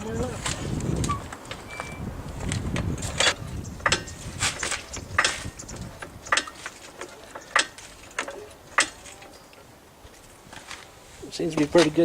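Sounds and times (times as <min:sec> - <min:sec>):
sharp clicks or knocks: 0:02.4 - 0:09.3.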